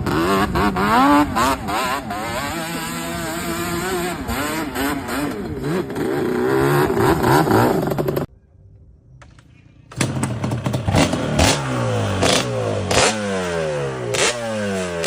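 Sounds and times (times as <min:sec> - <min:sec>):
two-stroke engine revving: 0:00.0 - 0:08.3, 0:10.0 - 0:15.0.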